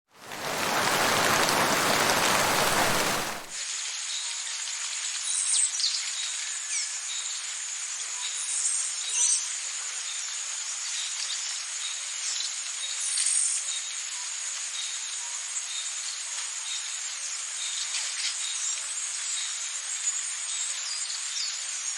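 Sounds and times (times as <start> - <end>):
heavy rain hiss: 0.1 - 4.0.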